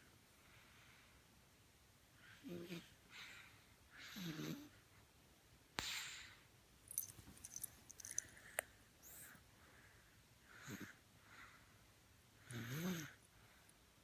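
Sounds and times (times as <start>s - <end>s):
faint snoring: 4.0s - 4.7s, 10.5s - 11.0s, 12.4s - 13.2s.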